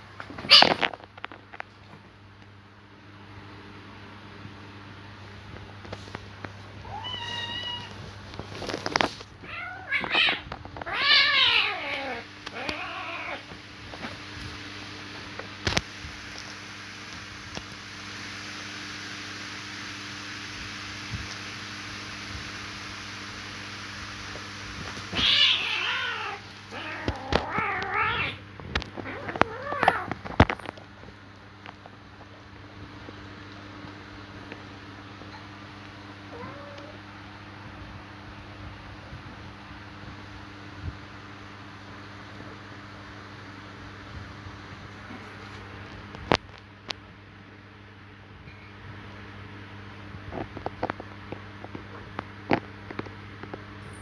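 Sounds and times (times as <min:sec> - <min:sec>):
cats fighting and yowling: 0:00.3 - 0:01.1, 0:06.8 - 0:14.1, 0:24.8 - 0:30.7, 0:36.3 - 0:37.0.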